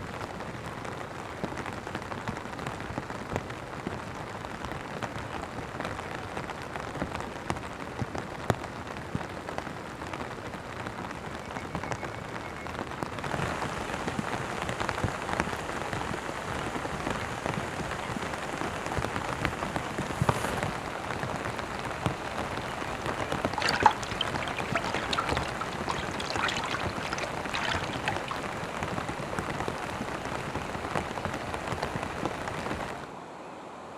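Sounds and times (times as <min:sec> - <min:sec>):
steady rain falling: 0:00.0 - 0:11.4, 0:13.1 - 0:26.1, 0:26.8 - 0:33.1
raindrops hitting near microphone: 0:13.2 - 0:33.0.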